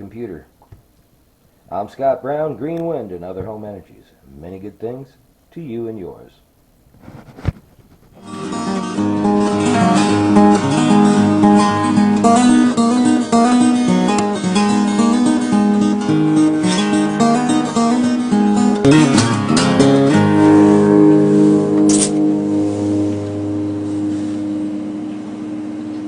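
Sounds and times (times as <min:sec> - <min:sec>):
acoustic guitar strummed and picked: 0:08.2 - 0:26.0.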